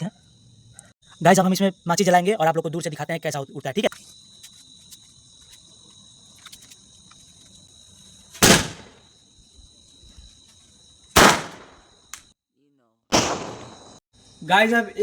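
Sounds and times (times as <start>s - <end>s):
crickets chirping: 0.0s - 15.0s
firecracker bangs: 8.4s - 9.0s, 11.2s - 11.8s, 13.1s - 14.0s.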